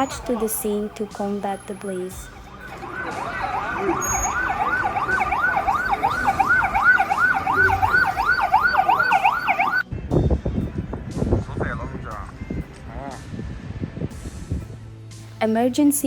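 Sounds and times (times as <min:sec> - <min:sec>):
emergency vehicle siren yelping: 0:02.2 - 0:09.8.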